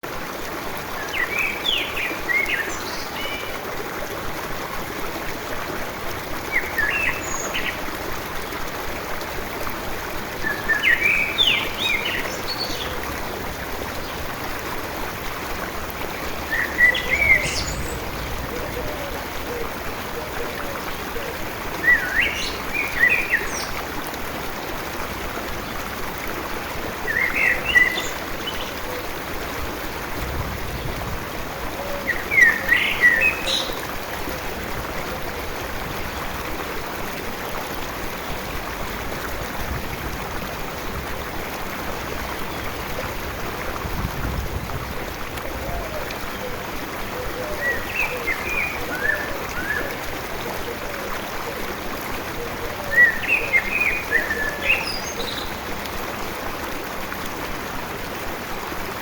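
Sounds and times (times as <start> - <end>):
stream babbling: 0.0 - 59.0
songbirds chirping: 16.0 - 23.9.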